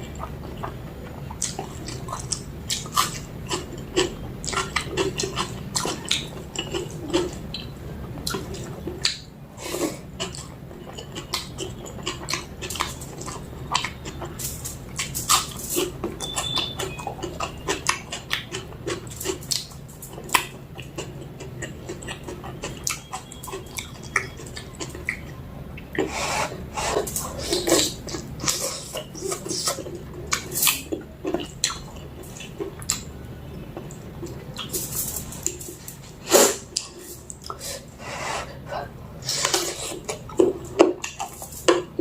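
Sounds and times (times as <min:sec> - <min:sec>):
wet chewing and lip smacks: 0:00.0 - 0:09.3, 0:10.2 - 0:26.1, 0:27.0 - 0:33.1.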